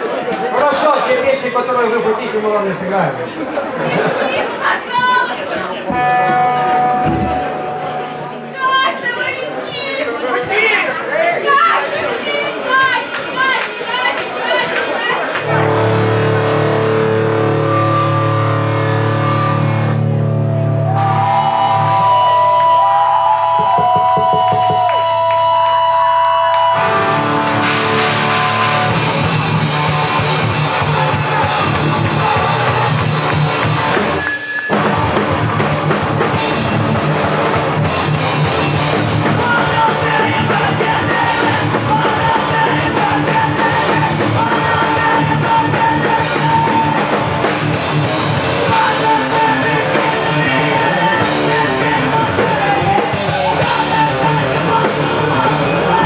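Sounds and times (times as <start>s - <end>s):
drums: 5.8s - 7.9s, 11.7s - 56.0s
rock band playing live: 5.8s - 9.0s, 13.1s - 22.8s, 23.4s - 56.0s
electric guitar ringing: 5.9s - 9.2s, 15.4s - 41.8s.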